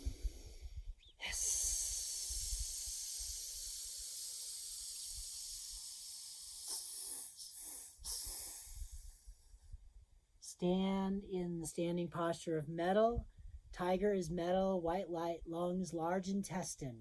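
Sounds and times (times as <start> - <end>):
person exhaling a hiss: 0.0 - 9.5
short sharp breaths out: 0.0 - 9.6.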